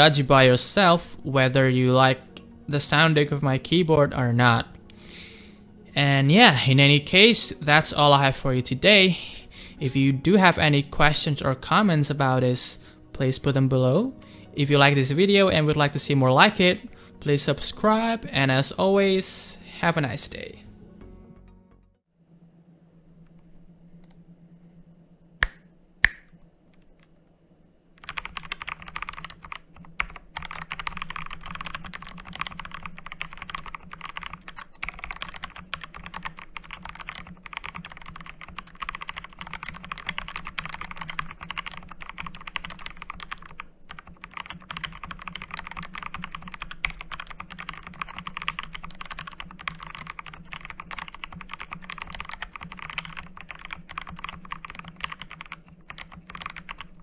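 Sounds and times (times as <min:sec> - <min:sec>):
sharp clicks: 0:25.4 - 0:26.9
mechanical keyboard typing: 0:28.0 - 0:57.0.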